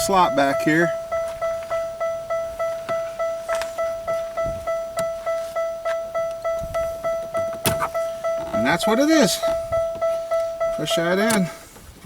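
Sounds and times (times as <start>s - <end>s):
car warning chime dinging: 0.0s - 12.0s
light clicks on dash trim: 2.8s - 8.7s.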